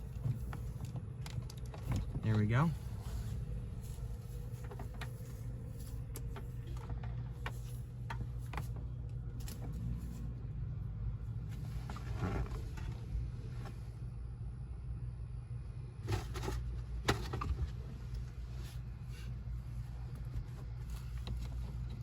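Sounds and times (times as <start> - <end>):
cables rustling and clicking: 0.0 - 2.5
low hum: 0.0 - 22.0.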